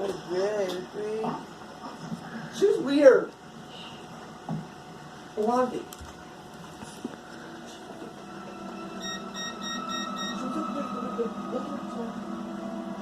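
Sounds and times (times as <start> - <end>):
steady low hum: 0.0 - 13.0
faint held tone: 8.3 - 12.9
short electronic beeps: 9.0 - 10.5.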